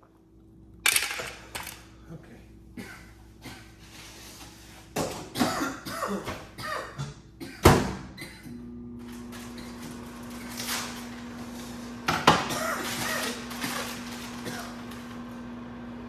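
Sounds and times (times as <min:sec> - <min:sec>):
electric appliance hum: 0:00.0 - 0:16.0.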